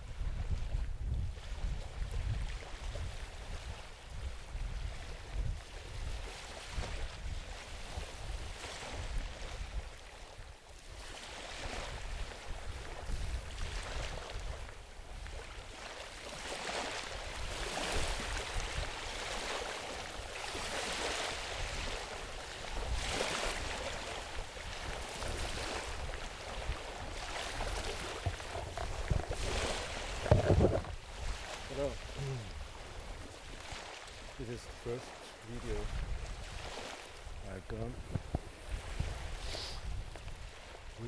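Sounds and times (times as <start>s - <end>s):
wind buffeting microphone: 0.0s - 10.0s, 10.9s - 15.7s, 17.2s - 34.7s, 35.4s - 41.0s
rustling hiss: 38.1s - 40.0s.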